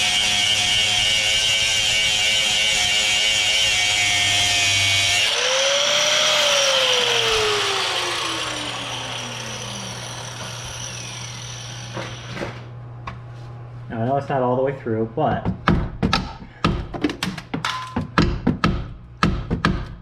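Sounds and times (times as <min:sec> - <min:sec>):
angle grinder cutting metal: 0:00.0 - 0:12.7.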